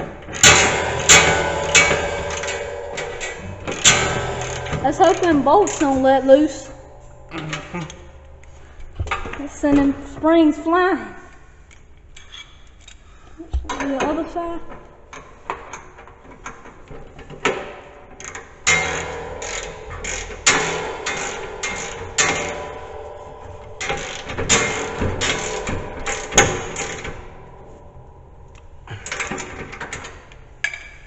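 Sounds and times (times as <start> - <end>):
metal clanking: 0.0 - 10.6, 12.0 - 31.0
ratchet wrench clicking: 18.2 - 22.5.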